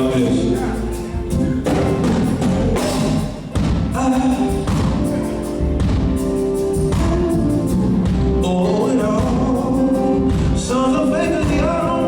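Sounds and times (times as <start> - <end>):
live gospel band music: 0.0 - 12.0.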